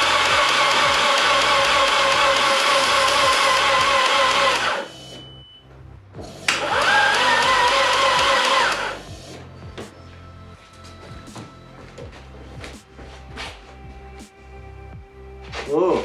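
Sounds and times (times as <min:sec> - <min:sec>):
starter motor cranking: 0:00.0 - 0:05.3, 0:06.2 - 0:09.4.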